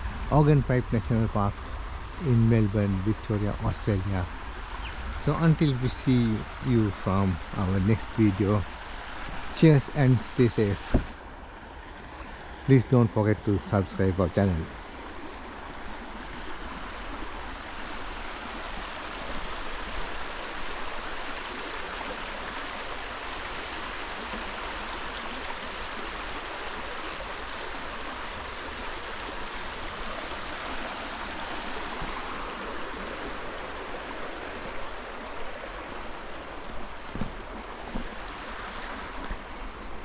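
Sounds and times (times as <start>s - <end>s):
creek flowing: 0.0s - 40.0s.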